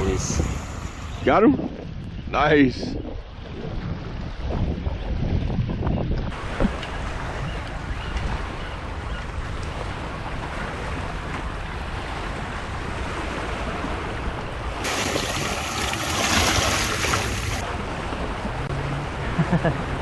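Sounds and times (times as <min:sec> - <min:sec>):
wind buffeting microphone: 0:00.0 - 0:17.6
waves washing on shore: 0:14.8 - 0:17.6.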